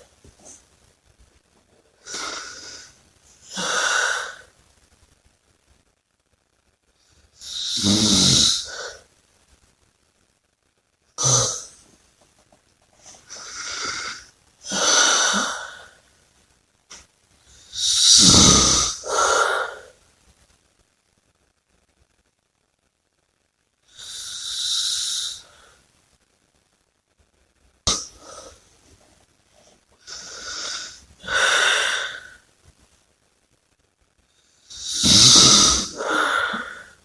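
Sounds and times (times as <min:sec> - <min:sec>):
person breathing heavily: 0:02.0 - 0:04.5, 0:30.1 - 0:32.4, 0:34.7 - 0:37.0
deep snoring rattle: 0:17.9 - 0:19.1, 0:34.8 - 0:36.8.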